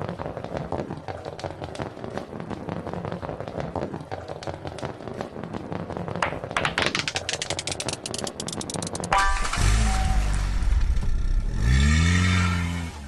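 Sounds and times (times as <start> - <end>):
marbles rolling and clicking: 0.0 - 9.2.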